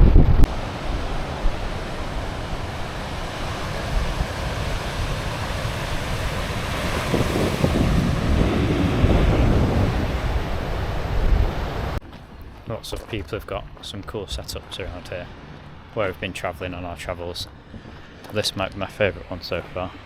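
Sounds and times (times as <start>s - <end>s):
low rumble: 0.0s - 12.5s
wind buffeting microphone: 0.0s - 20.0s.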